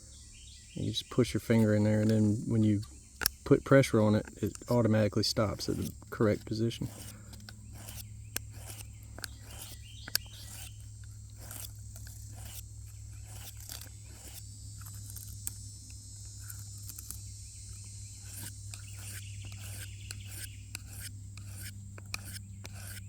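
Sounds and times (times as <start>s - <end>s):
steady low hum: 0.0s - 23.0s
knife scraping on sharpening file: 3.2s - 15.6s, 18.2s - 23.0s.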